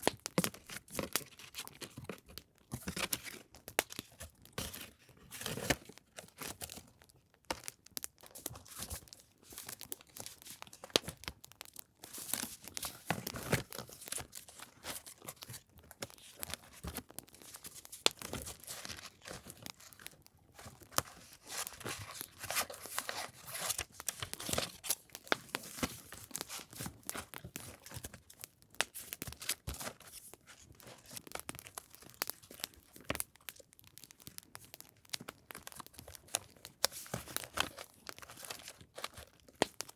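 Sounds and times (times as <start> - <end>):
paper rustling and tearing: 0.4 - 6.8, 12.1 - 28.1.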